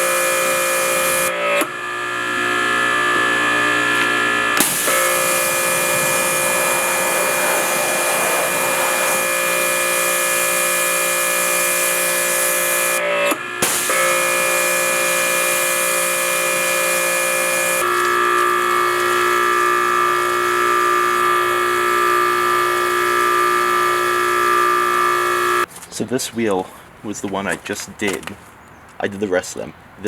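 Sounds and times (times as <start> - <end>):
pressure washer pump whine: 0.0 - 25.7
water spray hissing: 4.6 - 13.0, 13.6 - 20.4.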